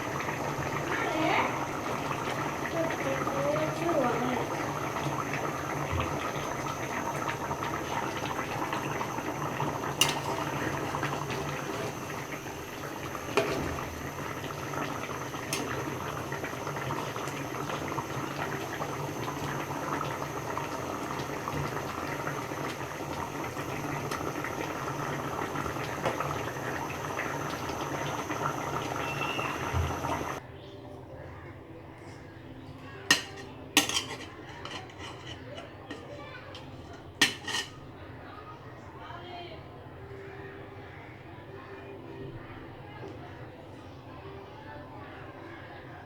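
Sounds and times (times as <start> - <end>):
curry bubbling in a pan: 0.0 - 30.4.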